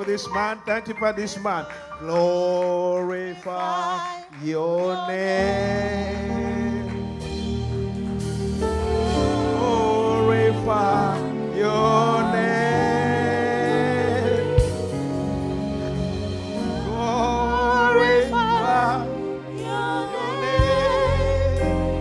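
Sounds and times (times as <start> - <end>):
gospel singing with vibrato: 0.0 - 22.0
sustained low instrumental notes: 5.5 - 22.0.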